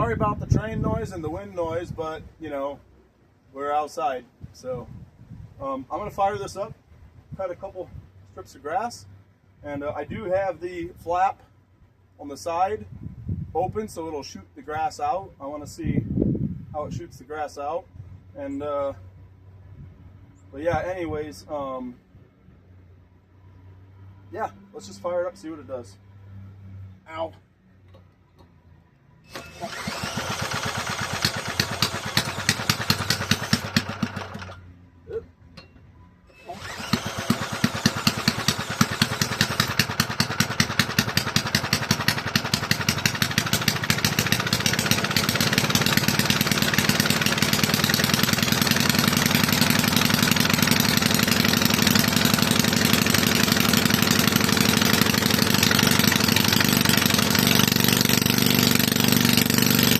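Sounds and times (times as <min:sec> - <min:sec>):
unmuffled lawn mower engine popping: 0:29.3 - 0:34.6, 0:36.6 - 0:59.9.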